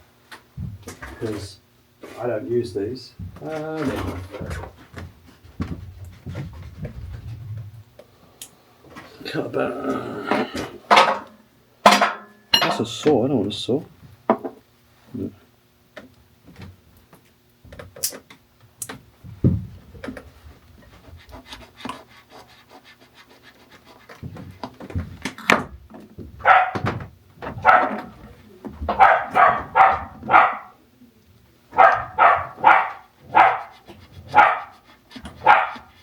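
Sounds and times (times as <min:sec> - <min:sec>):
dog barking: 0:26.4 - 0:28.2, 0:28.9 - 0:30.8, 0:31.7 - 0:36.0.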